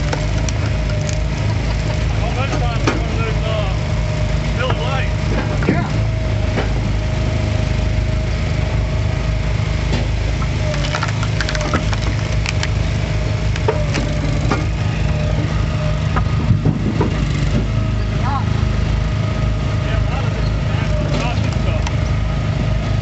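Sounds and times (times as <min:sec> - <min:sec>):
wood cracking and splintering: 0:00.0 - 0:01.8, 0:10.4 - 0:14.8
log splitter engine running: 0:00.0 - 0:23.0.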